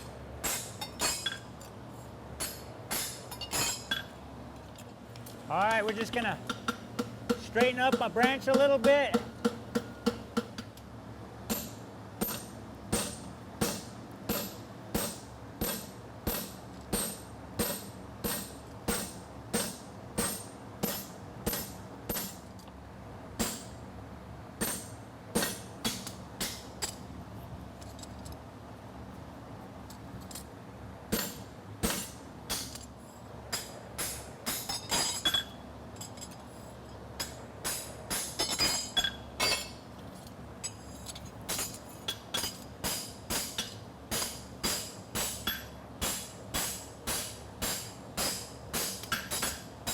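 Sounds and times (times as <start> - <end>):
hammer striking horseshoe on anvil: 0.0 - 1.5, 2.4 - 4.1, 5.8 - 10.7, 11.5 - 22.4, 23.4 - 23.8, 24.6 - 27.0, 31.1 - 32.9, 33.5 - 36.2, 37.2 - 39.8, 41.5 - 49.9.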